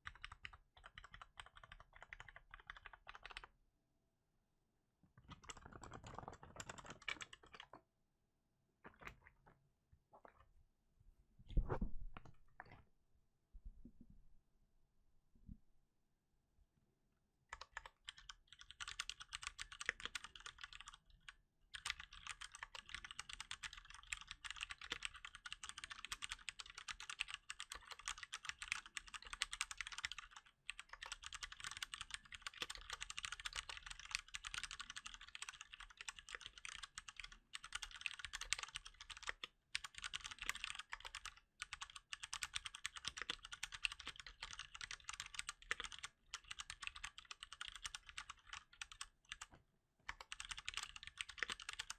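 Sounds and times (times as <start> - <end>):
mechanical keyboard typing: 0.0 - 3.5, 5.3 - 7.8, 17.5 - 21.0, 21.7 - 49.5, 50.1 - 51.9.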